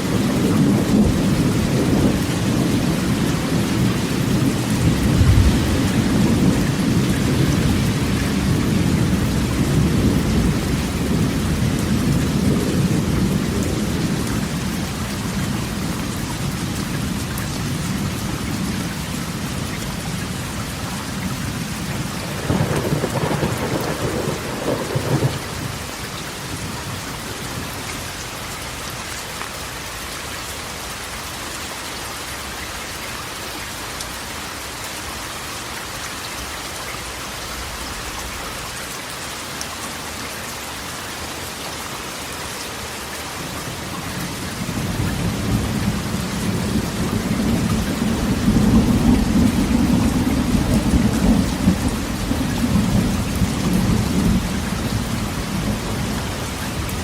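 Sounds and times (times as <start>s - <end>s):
rain on a metal roof: 0.0s - 57.0s
thunder rumbling: 0.1s - 15.8s, 21.5s - 26.9s, 44.5s - 57.0s
thunder clap: 4.2s - 11.1s, 22.4s - 25.7s.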